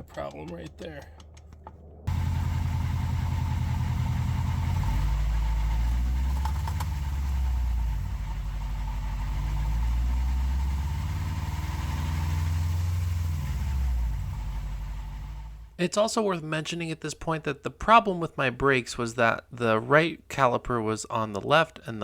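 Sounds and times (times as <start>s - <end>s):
car engine rumbling: 0.0s - 15.8s.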